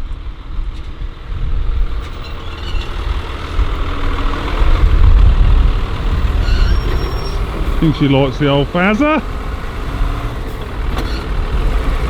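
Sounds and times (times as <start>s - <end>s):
heavy diesel engine running: 0.0s - 12.0s.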